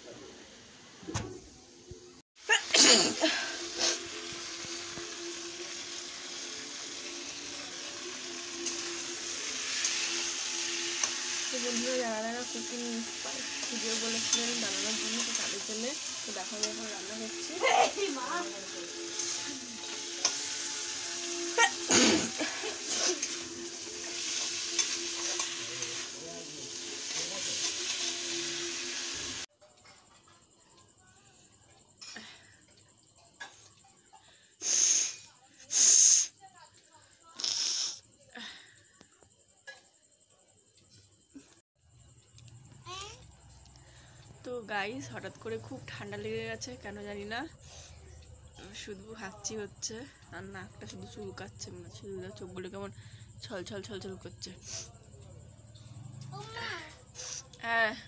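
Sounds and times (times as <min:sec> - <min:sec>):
food sizzling in a pan: 0:00.0 - 0:29.5, 0:33.4 - 0:36.6, 0:37.4 - 0:38.2, 0:42.8 - 0:43.3, 0:43.9 - 0:58.0
steady hiss: 0:00.0 - 0:29.5, 0:34.6 - 0:36.6, 0:37.3 - 0:38.2, 0:56.8 - 0:57.5
person sneezing: 0:02.5 - 0:04.0, 0:21.6 - 0:23.2
utensil clicking on pan: 0:18.5 - 0:20.8, 0:22.9 - 0:28.2.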